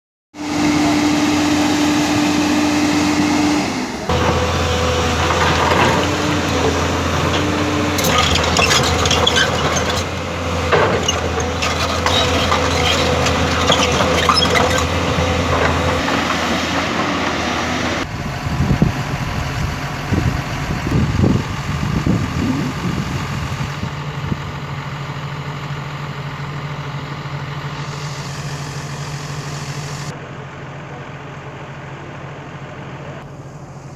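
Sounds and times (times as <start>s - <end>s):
diesel engines running: 0.4s - 33.9s
metal clanks and rattles: 5.2s - 16.4s.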